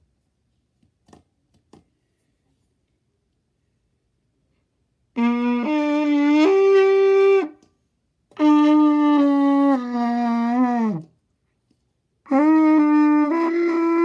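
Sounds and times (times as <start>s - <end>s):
trumpet playing held notes: 5.2s - 7.6s, 8.3s - 11.0s, 12.3s - 14.0s.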